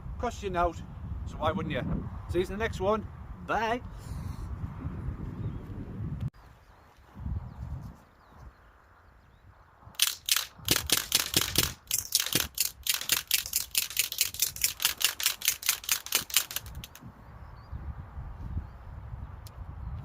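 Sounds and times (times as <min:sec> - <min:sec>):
bb gun full-auto burst: 0:10.0 - 0:17.0.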